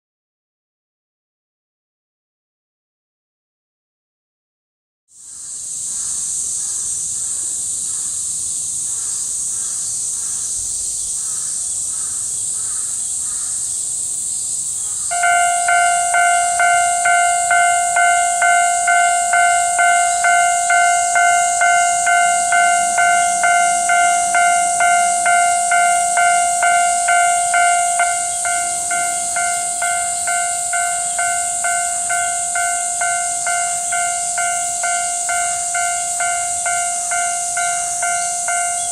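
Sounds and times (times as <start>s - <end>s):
cicadas hissing: 5.1s - 38.9s
level-crossing warning bell: 15.1s - 38.9s.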